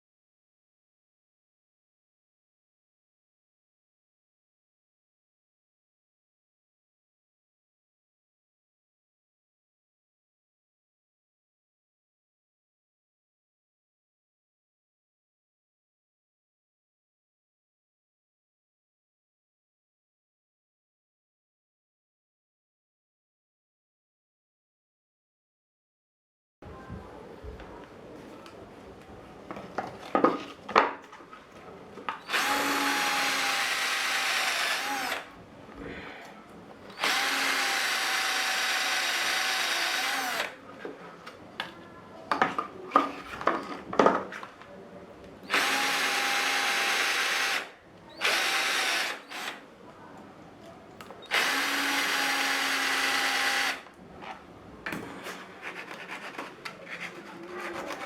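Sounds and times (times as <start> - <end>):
electric drill boring wood: 32.2 - 35.3, 36.9 - 40.5, 45.5 - 49.6, 51.3 - 53.9.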